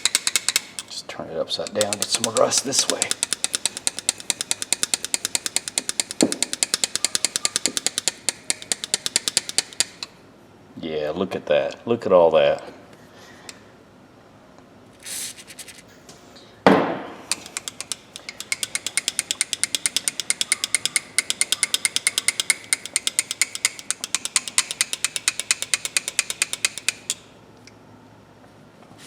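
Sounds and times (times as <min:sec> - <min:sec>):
pliers jaws clicking: 0:00.0 - 0:01.0, 0:01.6 - 0:10.1, 0:17.3 - 0:27.3
short hiss: 0:15.0 - 0:15.8.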